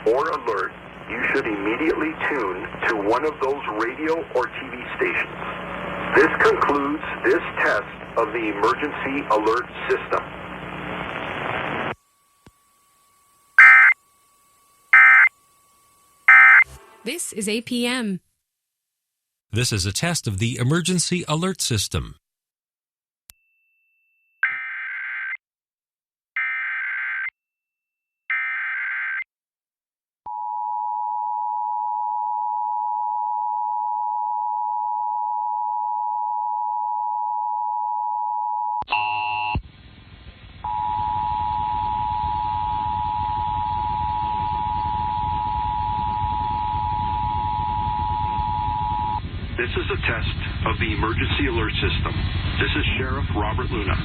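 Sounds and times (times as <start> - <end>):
radio hiss: 0.0 - 12.0, 46.6 - 54.0
two-tone attention signal: 13.6 - 14.0, 16.3 - 17.0
digital data bursts: 16.3 - 16.8.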